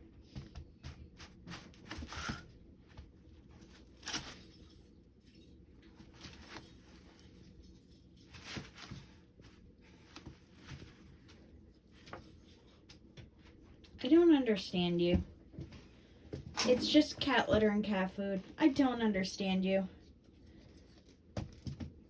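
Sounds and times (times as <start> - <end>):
cat scratching litter: 0.7 - 4.4.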